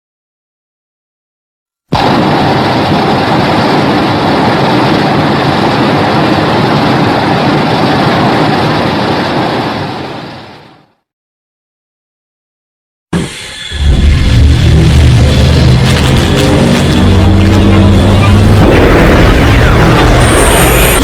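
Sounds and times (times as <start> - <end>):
loud rushing noise: 1.9 - 10.7, 13.2 - 21.0.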